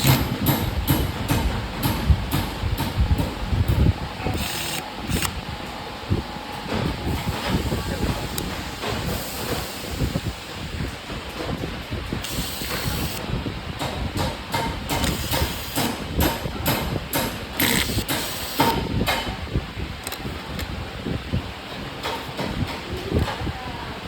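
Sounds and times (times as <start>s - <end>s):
wind rumble on microphone: 0.0s - 4.4s, 5.0s - 18.0s, 18.7s - 24.0s.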